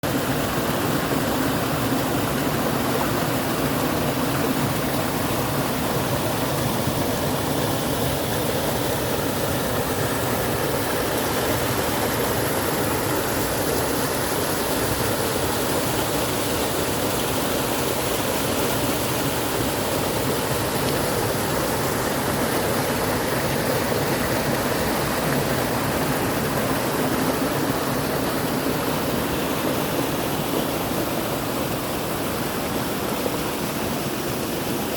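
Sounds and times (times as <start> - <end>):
stream rushing: 0.0 - 34.9.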